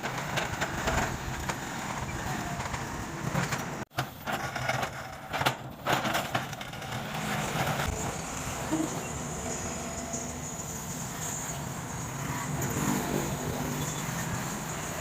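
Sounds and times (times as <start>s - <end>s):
diesel machinery engines running: 0.0s - 4.3s, 5.6s - 15.0s
knocks and clatter: 0.0s - 8.0s.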